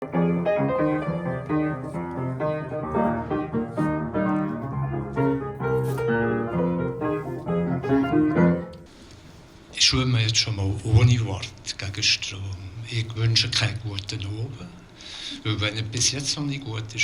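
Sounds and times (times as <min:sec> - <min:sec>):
solo piano playing: 0:00.0 - 0:08.9.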